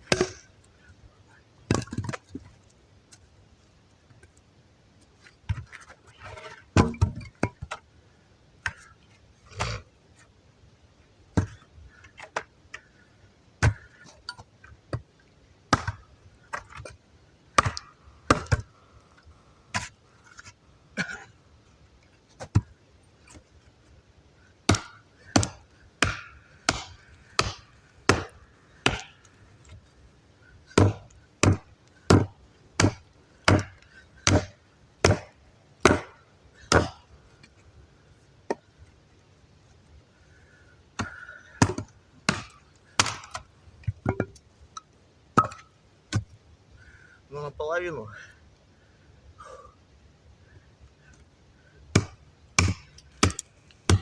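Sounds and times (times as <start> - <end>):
axe chopping a log: 0.1 - 0.5, 6.8 - 7.2, 13.6 - 13.9, 15.7 - 16.0, 17.6 - 18.7, 24.7 - 29.2, 30.8 - 37.0, 41.0 - 43.4, 51.9 - 54.0.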